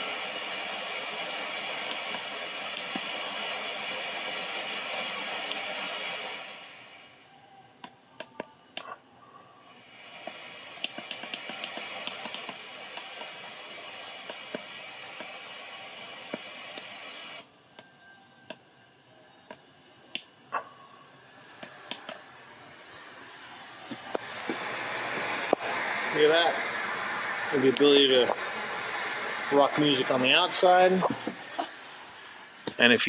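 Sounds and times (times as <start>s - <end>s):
sharp clicks: 10.8s - 13.3s, 21.6s - 22.2s.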